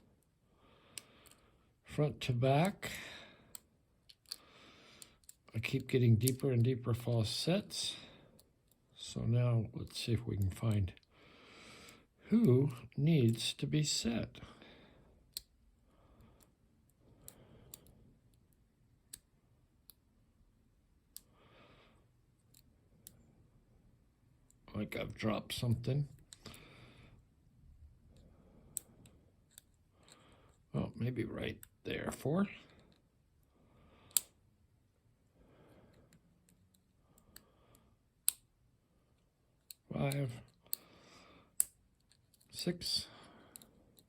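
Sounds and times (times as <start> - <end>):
lock pick clicking: 3.5 - 4.4, 5.0 - 5.5, 34.1 - 34.4, 38.2 - 38.5, 41.5 - 42.5
lock pins clicking: 4.0 - 4.4.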